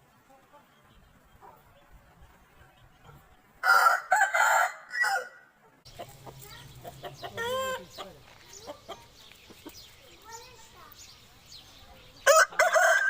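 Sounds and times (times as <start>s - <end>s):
rooster crowing: 3.6s - 5.5s, 12.3s - 13.0s
faint hen clucking: 5.0s - 9.8s.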